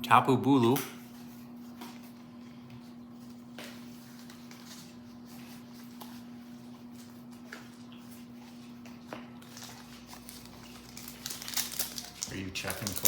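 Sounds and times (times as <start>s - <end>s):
trading cards clicking and rustling: 9.4s - 13.0s.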